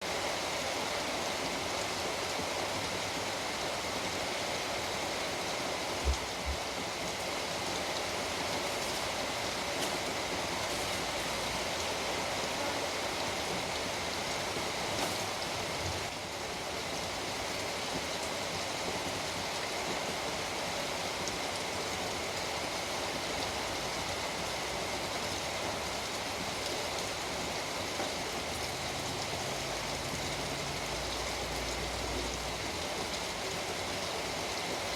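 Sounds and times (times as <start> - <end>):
heavy rain falling: 0.0 - 34.9.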